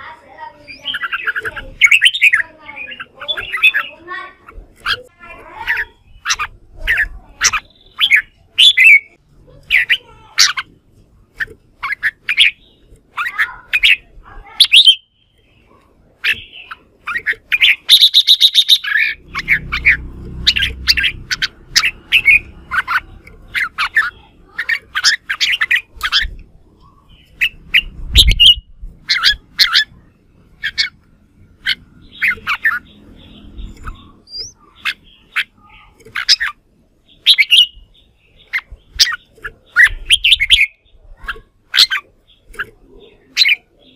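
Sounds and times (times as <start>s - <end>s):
buzzy bird chatter: 0.0s - 43.9s
bird whistling song: 6.1s - 9.2s, 14.6s - 15.5s, 16.2s - 31.0s, 31.6s - 42.7s.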